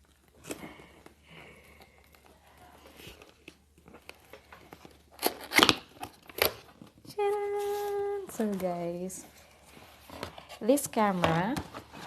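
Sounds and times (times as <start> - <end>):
packaging ripping: 2.9 - 7.0.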